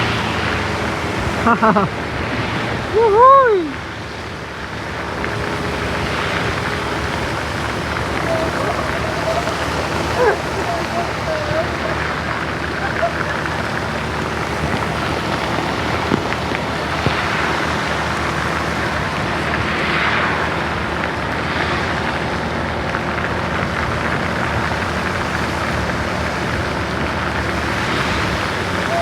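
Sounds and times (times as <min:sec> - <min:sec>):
low engine hum: 0:00.0 - 0:29.0
rain hiss on wet road: 0:00.0 - 0:29.0.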